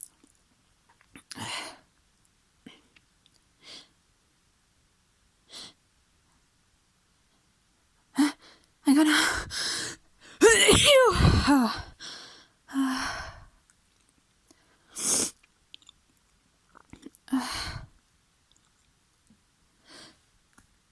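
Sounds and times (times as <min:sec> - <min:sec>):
gasping in-breaths: 0:08.4 - 0:13.5
person sneezing: 0:10.4 - 0:11.9.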